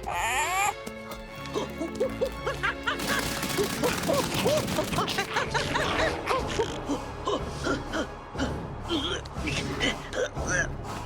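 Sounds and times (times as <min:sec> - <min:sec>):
music: 0:00.0 - 0:11.0.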